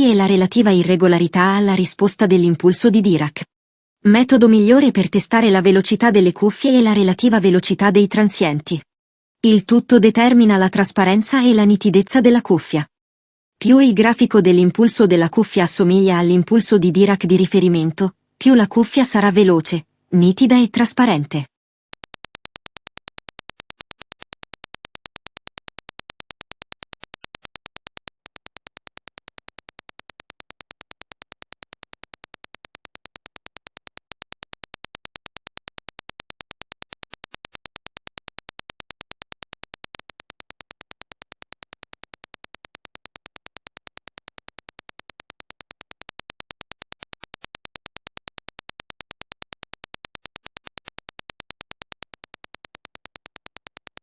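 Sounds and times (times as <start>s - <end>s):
rapid train of sharp clicks: 22.0s - 54.0s.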